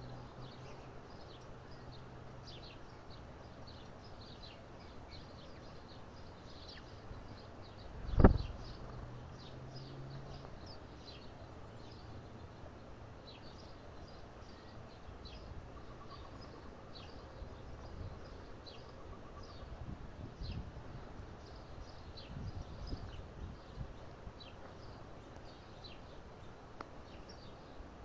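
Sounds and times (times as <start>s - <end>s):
outdoor background noise: 0.0s - 28.0s
small birds chirping: 0.0s - 28.0s.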